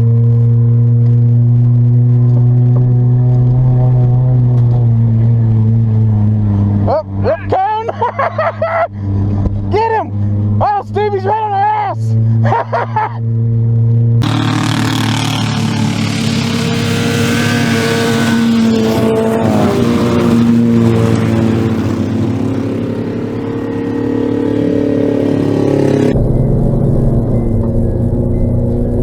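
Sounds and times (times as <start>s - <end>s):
race car engines revving: 14.2s - 26.2s.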